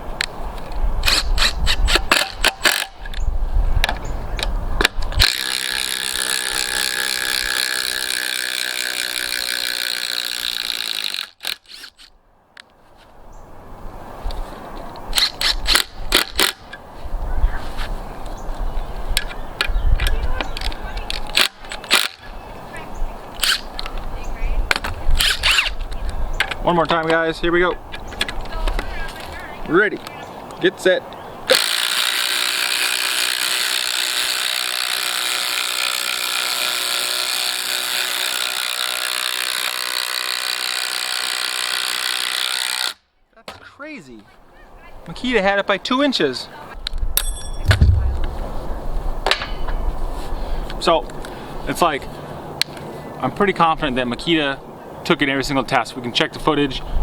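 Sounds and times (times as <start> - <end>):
sharp clicks and knocks: 47.2 - 48.5
low rumble: 47.6 - 49.1.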